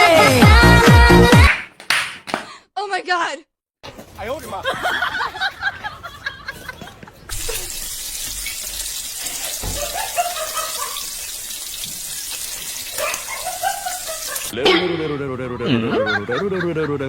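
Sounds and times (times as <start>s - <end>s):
running water: 7.3s - 14.6s.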